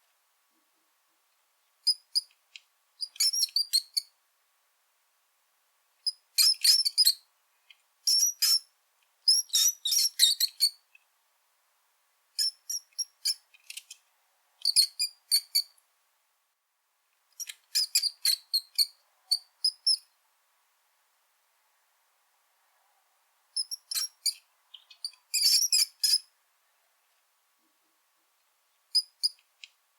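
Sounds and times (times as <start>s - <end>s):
rat squeaking: 3.0s - 4.1s, 6.1s - 7.2s, 8.1s - 8.7s, 9.3s - 10.8s, 12.4s - 14.0s, 14.6s - 15.7s, 17.4s - 20.0s, 23.6s - 26.3s, 28.9s - 29.4s.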